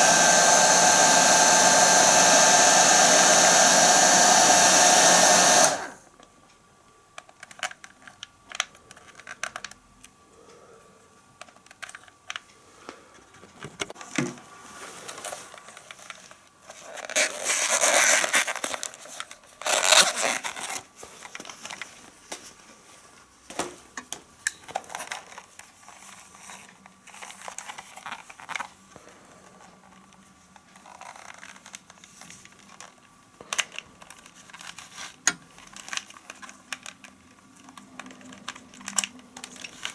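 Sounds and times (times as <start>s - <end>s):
rustling and crinkling: 11.4s - 39.9s
clicks and scrapes of handling: 24.4s - 39.9s.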